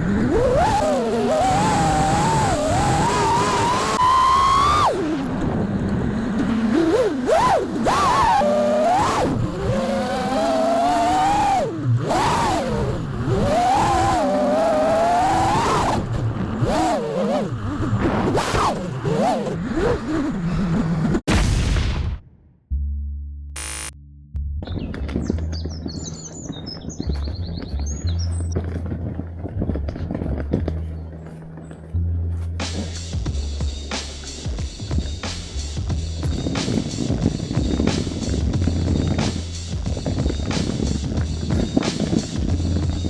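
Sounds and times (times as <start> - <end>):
drone motors whining: 0.0 - 21.2, 23.6 - 24.0.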